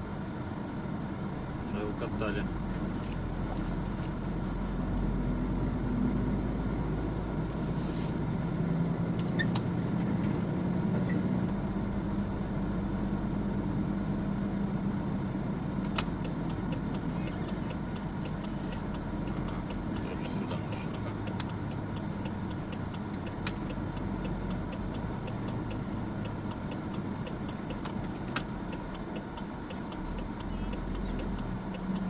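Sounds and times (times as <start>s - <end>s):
truck engine running: 0.0s - 32.0s
light ticks: 15.8s - 32.0s.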